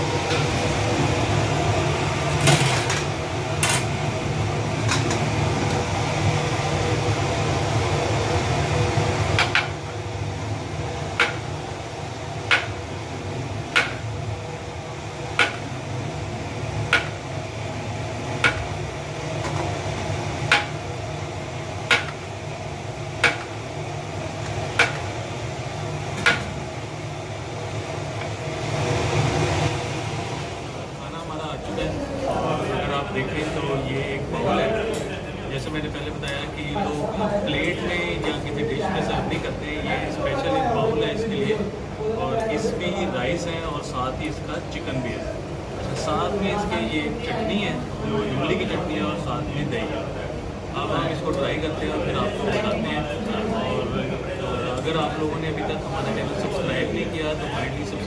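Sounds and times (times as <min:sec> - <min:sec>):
low machine hum: 0:00.0 - 0:58.0
sharp knocks: 0:21.9 - 0:22.2.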